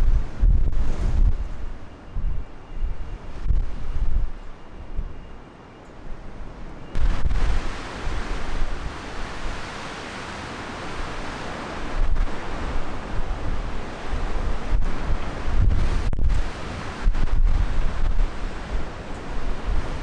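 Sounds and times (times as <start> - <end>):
storm wind gusting on microphone: 0.0 - 20.0.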